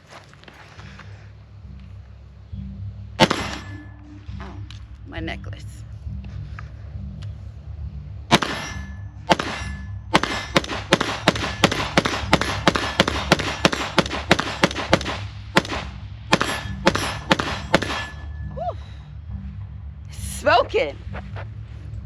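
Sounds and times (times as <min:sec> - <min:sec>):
rifle shots: 0:03.2 - 0:03.8, 0:08.3 - 0:18.2
metallic ring of steel targets: 0:03.2 - 0:05.4, 0:08.3 - 0:18.8.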